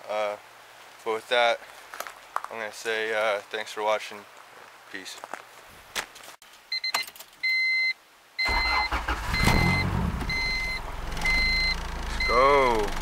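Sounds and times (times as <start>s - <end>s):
car warning chime beeping: 6.8s - 13.0s
car engine cranking and running: 8.4s - 13.0s.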